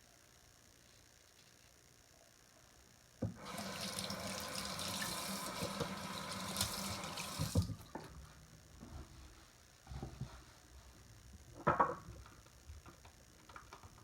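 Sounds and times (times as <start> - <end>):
water running into sink: 3.3 - 8.0.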